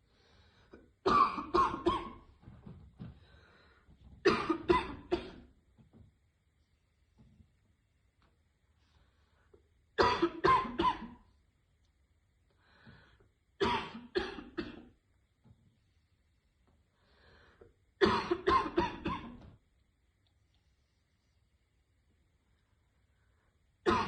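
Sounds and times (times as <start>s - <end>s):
woman's barking cough: 1.1s - 2.2s, 4.3s - 5.4s, 10.0s - 11.2s, 13.6s - 14.9s, 18.0s - 19.4s.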